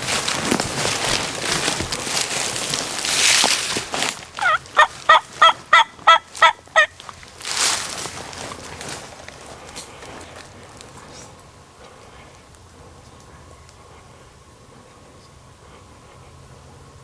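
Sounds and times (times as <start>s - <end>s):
rustling: 0.0s - 14.8s
turkey gobbling: 4.3s - 7.1s.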